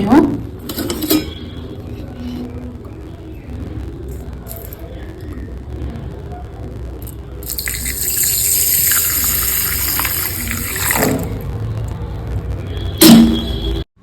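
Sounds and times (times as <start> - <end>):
tap water running into bowl: 7.4 - 11.4.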